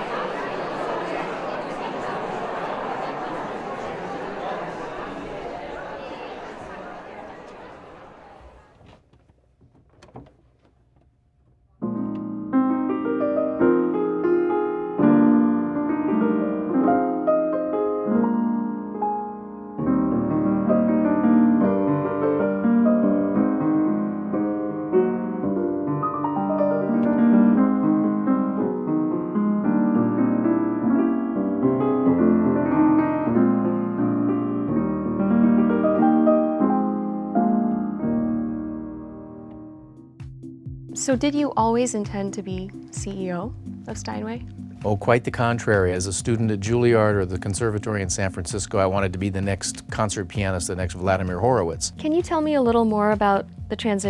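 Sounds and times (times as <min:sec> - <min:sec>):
solo piano playing: 0:11.8 - 0:52.3.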